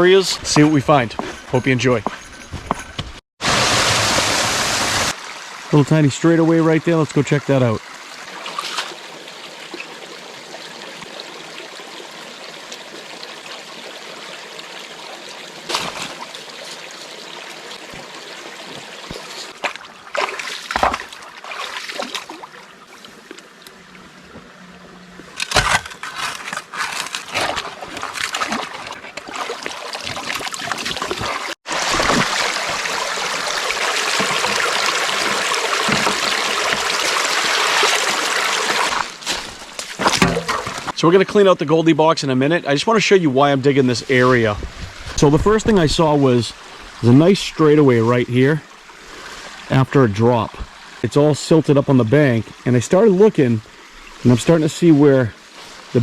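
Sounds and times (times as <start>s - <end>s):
brook water running: 0.0s - 2.3s, 3.4s - 56.0s
splashes and knocks: 8.3s - 9.0s, 15.6s - 16.8s, 17.9s - 22.5s, 25.4s - 41.0s.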